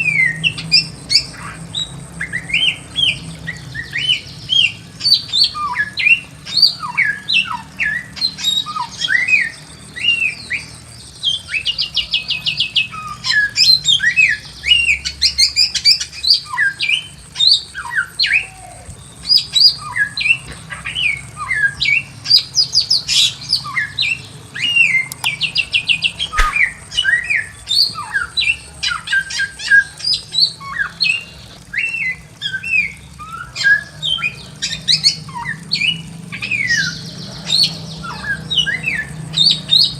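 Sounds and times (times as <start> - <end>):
bird whistling song: 26.3 - 26.7
bird trills: 26.4 - 26.7.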